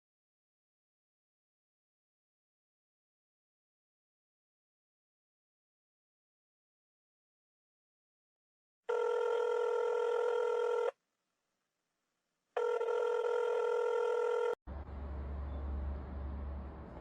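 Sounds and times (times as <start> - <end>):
electronic ringing tones: 8.9 - 10.9, 12.6 - 14.6.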